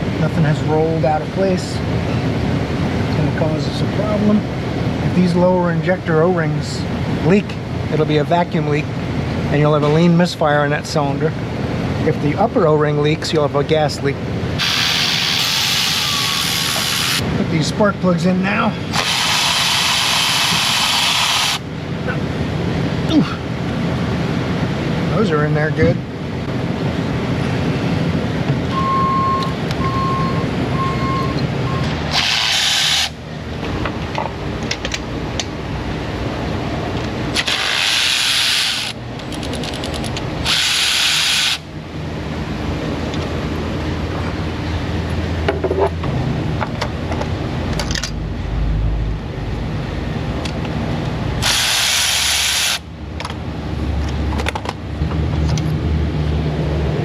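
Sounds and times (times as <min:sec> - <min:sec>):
short bursts of hissing: 0:14.6 - 0:17.2, 0:32.1 - 0:33.2, 0:37.4 - 0:39.0, 0:40.4 - 0:41.6, 0:51.4 - 0:52.8
shop background noise: 0:25.7 - 0:57.0
short beeps: 0:28.7 - 0:31.9.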